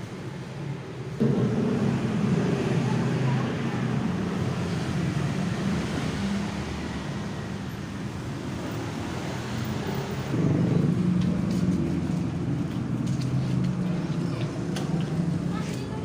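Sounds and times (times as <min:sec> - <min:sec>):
road noise: 0:00.0 - 0:16.0
vehicle engine: 0:01.0 - 0:16.0.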